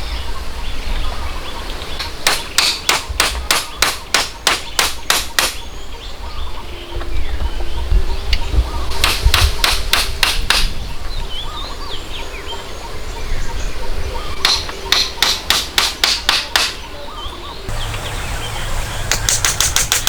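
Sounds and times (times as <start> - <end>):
small birds chirping: 0.0 - 20.0
rapid hand-tool strikes: 2.2 - 5.6, 9.0 - 10.7, 14.4 - 16.8, 19.1 - 20.0.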